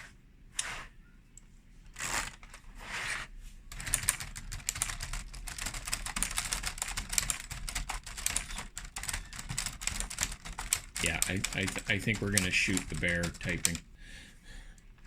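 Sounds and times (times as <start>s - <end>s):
plastic typewriter keys clicking: 3.7s - 13.8s.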